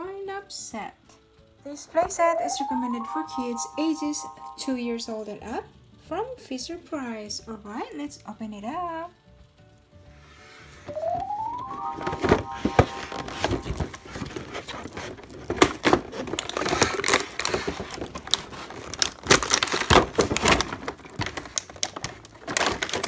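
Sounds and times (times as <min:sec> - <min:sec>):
packaging crinkling and tearing: 0:13.7 - 0:23.0
sharp clicks of plastic pieces: 0:15.4 - 0:23.0.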